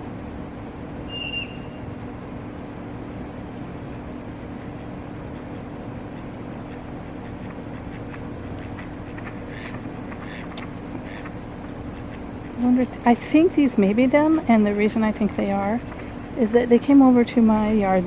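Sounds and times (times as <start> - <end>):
low outdoor background hum: 0.0 - 18.0
bird chirping: 1.1 - 1.8.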